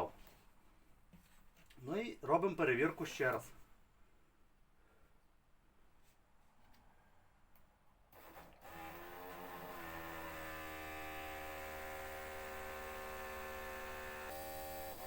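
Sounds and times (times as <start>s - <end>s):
electric fuel pump buzzing: 8.1s - 15.0s.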